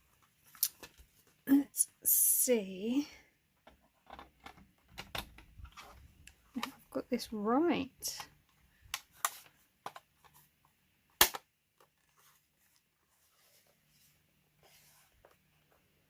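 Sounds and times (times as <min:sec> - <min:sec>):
sharp plastic snap: 0:11.2 - 0:11.5.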